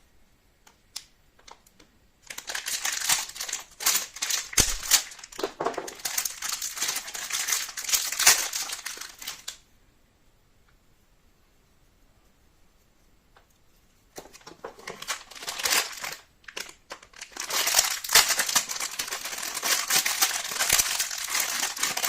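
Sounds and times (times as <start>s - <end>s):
small hard parts clicking and rattling: 1.4s - 9.6s, 14.2s - 22.0s.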